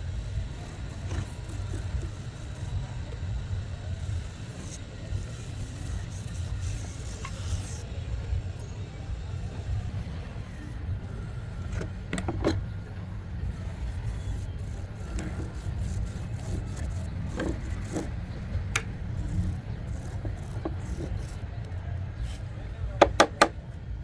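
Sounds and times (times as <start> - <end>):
steady low rumble: 0.0 - 23.0
light knocks and scrapes: 0.4 - 3.3, 10.4 - 23.6.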